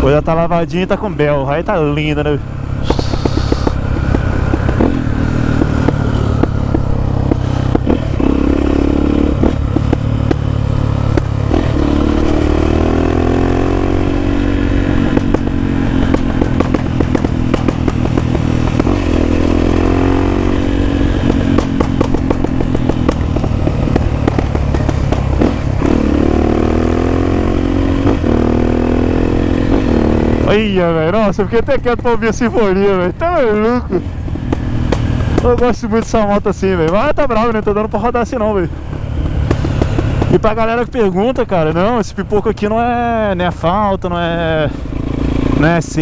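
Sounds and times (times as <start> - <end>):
motorcycle engine revving: 0.0 - 46.0
exhaust pops and crackles: 2.8 - 8.3, 9.3 - 12.4, 14.9 - 19.8, 20.8 - 26.2, 34.4 - 43.3.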